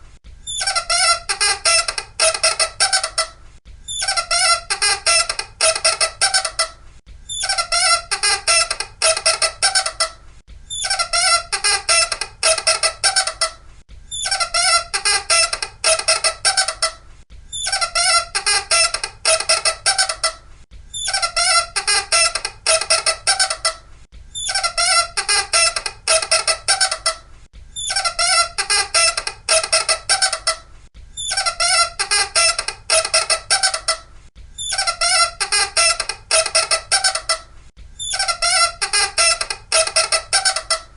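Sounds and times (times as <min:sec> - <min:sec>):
high-pitched squeaking chatter: 0:00.5 - 0:23.8, 0:24.4 - 0:27.2, 0:27.8 - 0:30.6, 0:31.2 - 0:40.9.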